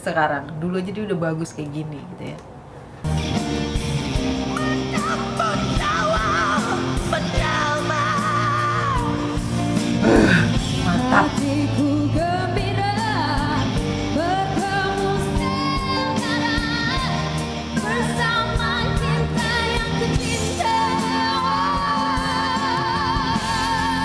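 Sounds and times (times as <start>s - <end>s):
pop ballad with live band: 3.2s - 24.0s
voice holding notes with vibrato: 10.0s - 12.1s.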